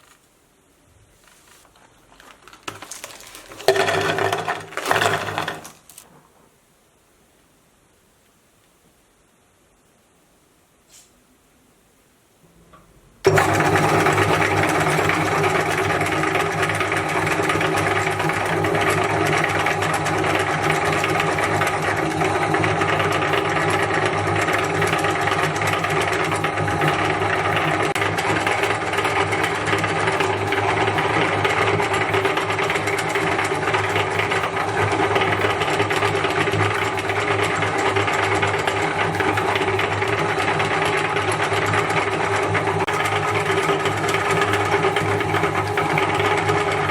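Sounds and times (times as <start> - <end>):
electric meat grinder running: 3.6 - 5.8, 13.3 - 46.9.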